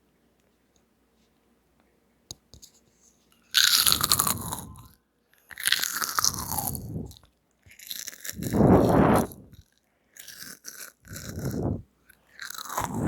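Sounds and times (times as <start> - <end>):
crunching bites and chewing: 3.4 - 13.0.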